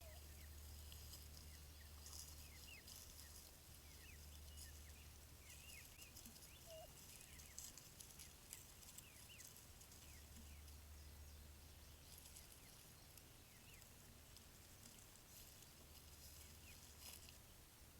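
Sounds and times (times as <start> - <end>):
turkey poults peeping: 0.0 - 17.5
low steady hum: 0.0 - 17.9
lower bird call: 5.5 - 7.4.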